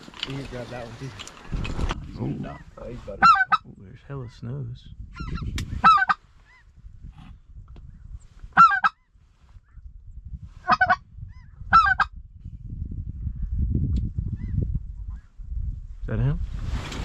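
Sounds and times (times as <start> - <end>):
low rumble: 0.0 - 5.8
snow goose honking: 2.5 - 3.6, 5.2 - 6.6, 8.6 - 9.0, 10.6 - 11.0, 11.7 - 12.1.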